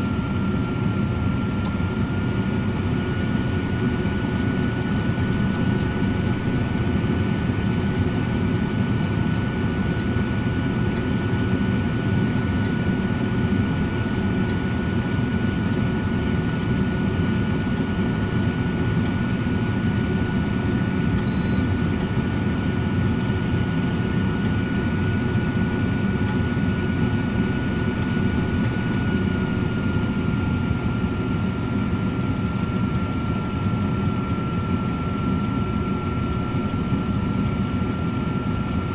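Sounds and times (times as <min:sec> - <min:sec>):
air fryer fan whirring: 0:00.0 - 0:38.9
high beep: 0:21.3 - 0:21.6.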